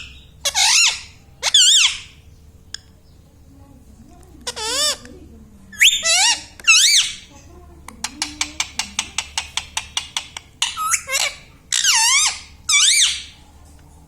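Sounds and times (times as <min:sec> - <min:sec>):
parakeet screeching calls: 0:00.0 - 0:02.8, 0:04.5 - 0:05.0, 0:05.8 - 0:07.3, 0:08.0 - 0:13.4.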